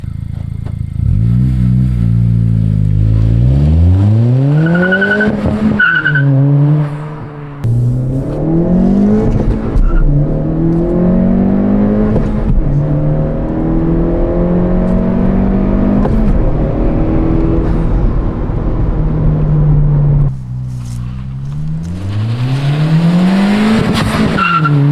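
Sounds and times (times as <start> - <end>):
car exhaust revving: 0.0 - 24.9.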